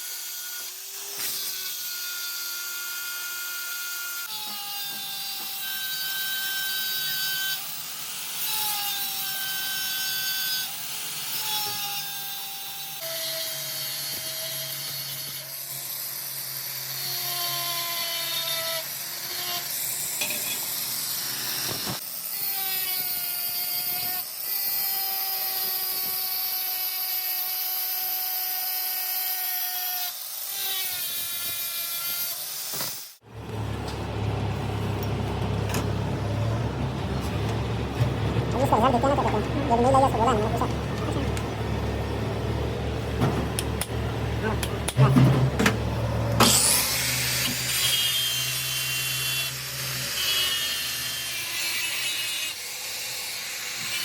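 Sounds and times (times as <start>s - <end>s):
metal-cutting machine whining: 32.7s - 54.0s.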